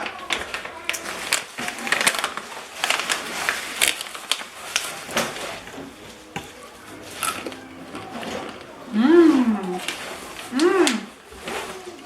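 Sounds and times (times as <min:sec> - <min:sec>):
snack bag crinkling: 0:00.0 - 0:08.9.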